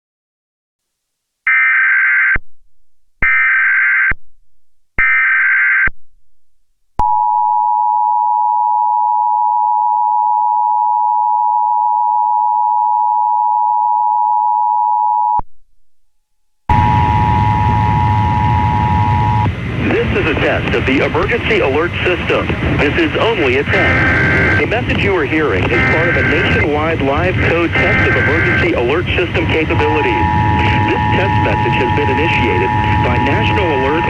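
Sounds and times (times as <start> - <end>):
two-tone attention signal: 16.7 - 19.5, 23.7 - 24.6, 25.7 - 26.7, 27.4 - 34.0
screeching digital data tones: 23.7 - 24.7, 25.7 - 26.7, 27.4 - 34.0.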